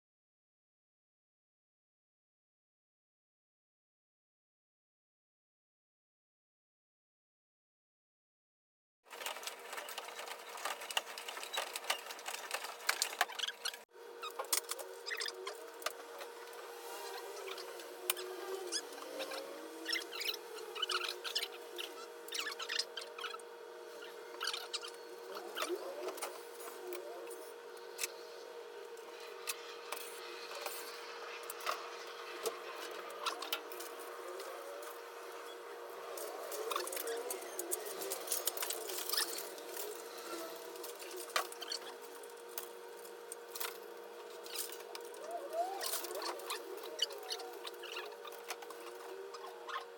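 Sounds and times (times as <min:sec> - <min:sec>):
small clicks and rattles: 0:09.1 - 0:13.8.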